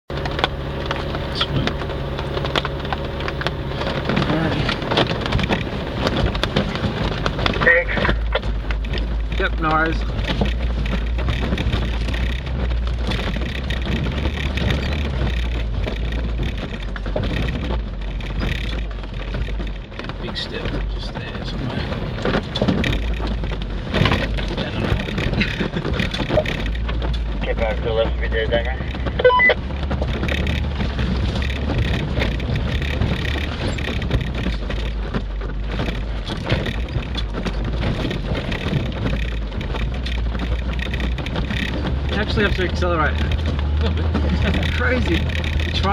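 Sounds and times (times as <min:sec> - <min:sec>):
low engine rumble: 0:00.0 - 0:45.9
body rattling and knocking: 0:00.1 - 0:45.9.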